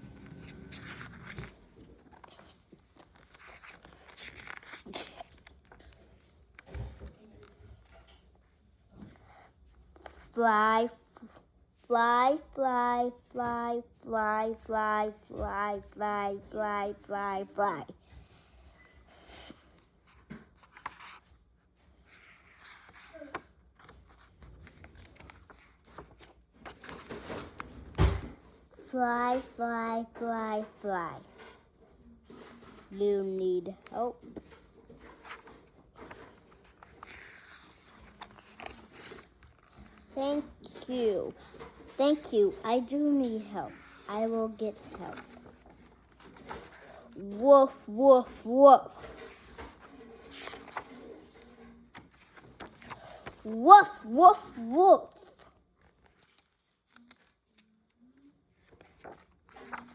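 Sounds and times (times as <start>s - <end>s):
paper rustling and clicking: 0.0s - 9.2s, 18.8s - 28.4s, 33.6s - 59.9s
page turning swishes: 0.0s - 10.4s, 19.3s - 28.2s, 34.3s - 58.0s, 58.6s - 59.9s.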